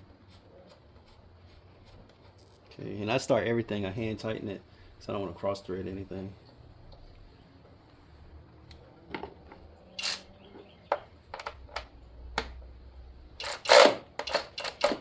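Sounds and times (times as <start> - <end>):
hand tools clicking and clanking: 13.4 - 15.0.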